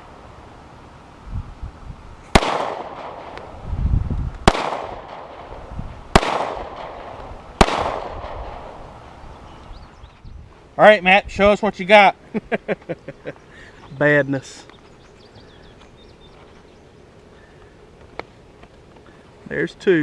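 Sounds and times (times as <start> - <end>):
pistol shots with echo: 2.3 - 3.4, 4.4 - 8.8.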